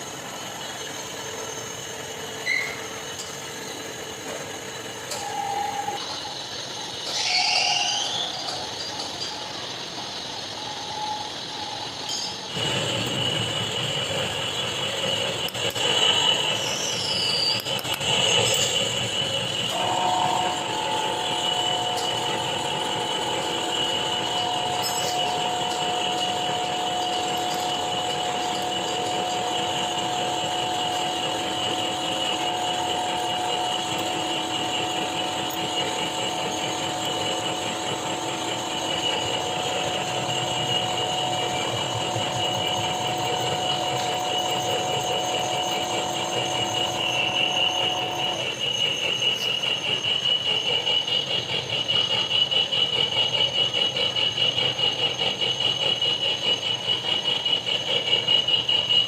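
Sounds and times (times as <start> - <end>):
high-pitched squeal: 5.1 - 51.1
machine tool cutting metal: 12.1 - 55.4.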